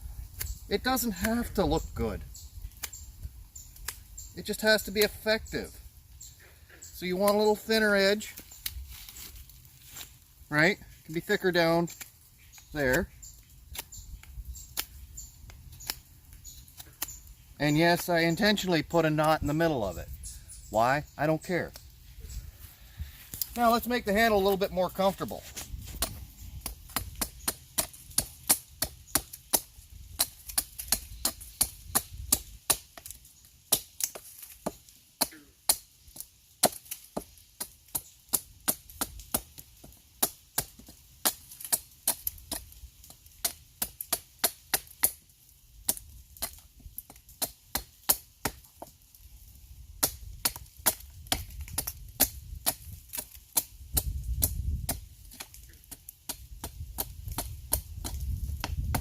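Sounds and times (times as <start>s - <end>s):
axe striking and shaving wood: 23.4s - 45.2s, 45.8s - 49.0s, 50.0s - 59.0s.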